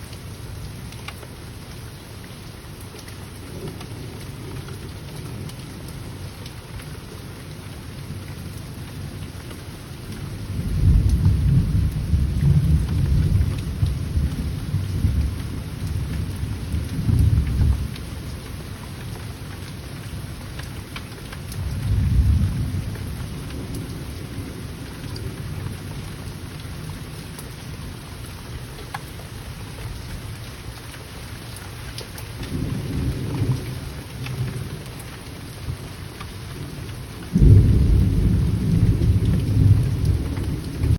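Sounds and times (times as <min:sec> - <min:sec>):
steady rain: 0:00.0 - 0:40.9
thunder rumbling: 0:10.5 - 0:18.5, 0:21.6 - 0:27.1, 0:32.4 - 0:34.8, 0:36.6 - 0:40.9.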